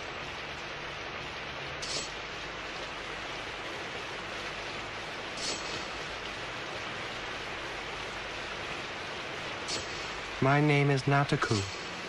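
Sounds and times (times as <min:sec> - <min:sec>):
heavy rain hissing: 0:00.0 - 0:12.0
sharp hiss: 0:01.8 - 0:02.3, 0:05.4 - 0:06.0, 0:09.6 - 0:12.0.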